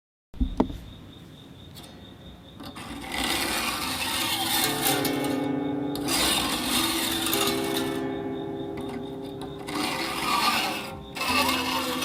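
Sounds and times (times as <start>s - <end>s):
knocks: 0.4s - 1.0s
chroma harp glassy ringing: 3.2s - 12.0s.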